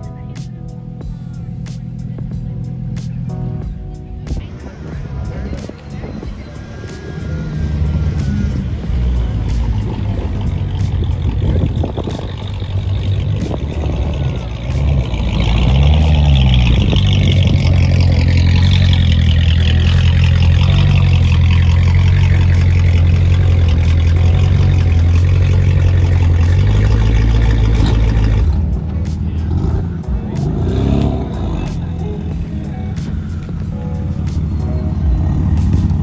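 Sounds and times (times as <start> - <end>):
car engine and exhaust: 0.0 - 36.0.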